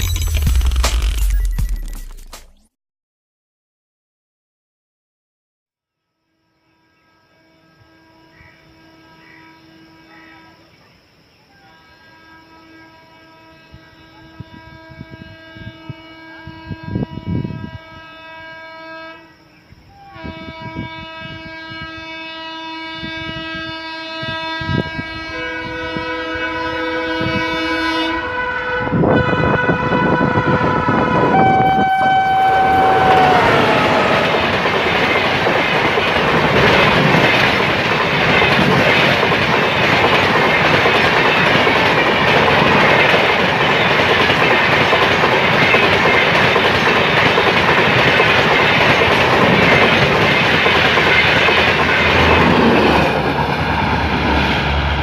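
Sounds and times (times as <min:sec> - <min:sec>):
locomotive horn blasts: 0:06.0 - 0:10.6, 0:11.6 - 0:34.7
train wheels clattering on rails: 0:32.8 - 0:54.5.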